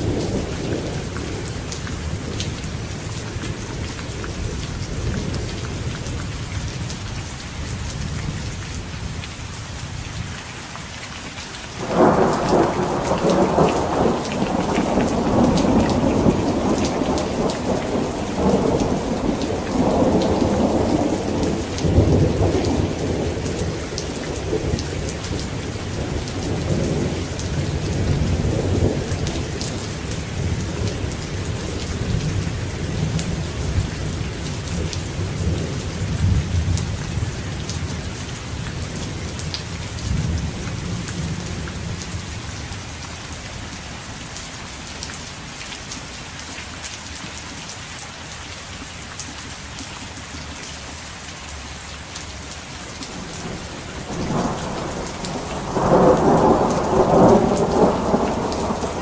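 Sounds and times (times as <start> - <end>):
rain falling: 0.0 - 59.0
thunder clap and rumble: 11.8 - 42.1, 53.1 - 59.0.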